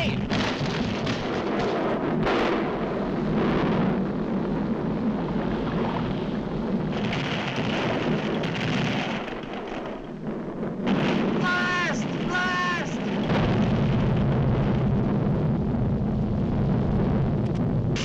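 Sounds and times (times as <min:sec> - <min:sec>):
cartoon volcano rumble: 0:00.0 - 0:18.0.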